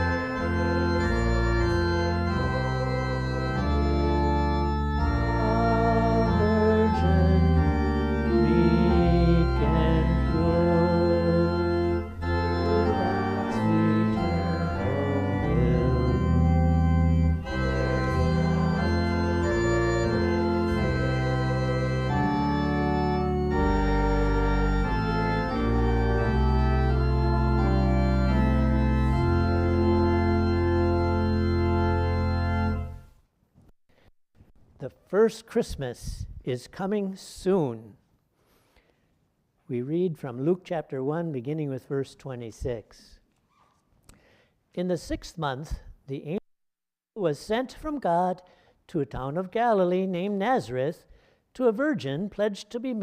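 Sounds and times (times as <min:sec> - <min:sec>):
church organ playing chords: 0:00.0 - 0:33.1.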